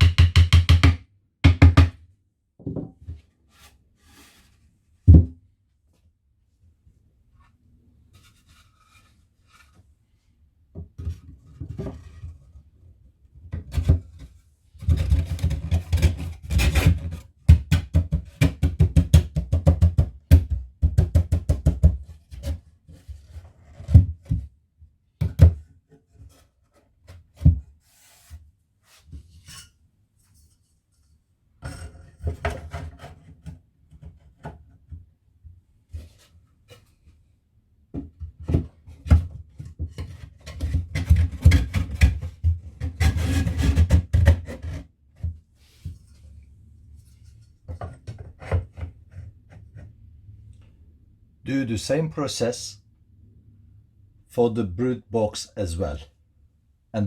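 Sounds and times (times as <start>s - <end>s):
sharp knocks on wood: 0.0s - 2.0s.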